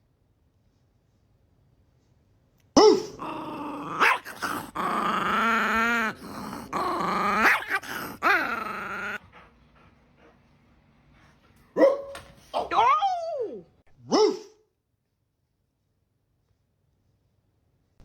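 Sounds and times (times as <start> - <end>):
dog growling and whining: 2.8 - 9.4.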